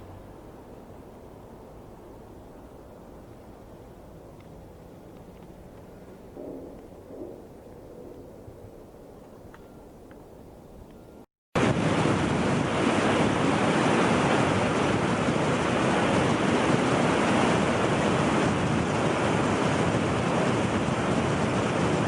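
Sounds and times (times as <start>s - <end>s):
steady rushing wind: 0.0s - 22.0s.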